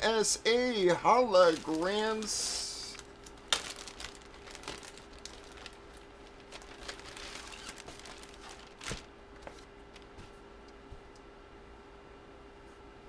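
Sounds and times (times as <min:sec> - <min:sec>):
plastic packaging crinkling: 0:00.7 - 0:10.1.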